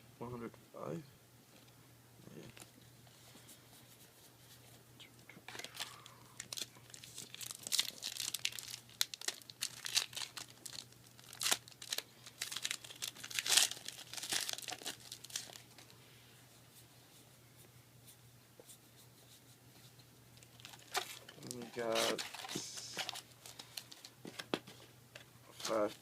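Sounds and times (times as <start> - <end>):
foil wrapper crinkling and tearing: 5.5 - 15.9, 20.4 - 24.2.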